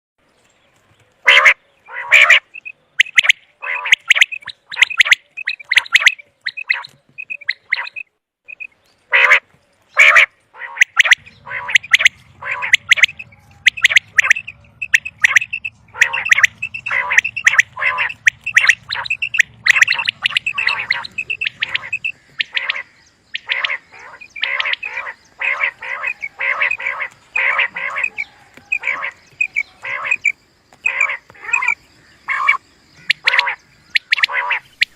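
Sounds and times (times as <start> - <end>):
quail calling: 1.2 - 34.9.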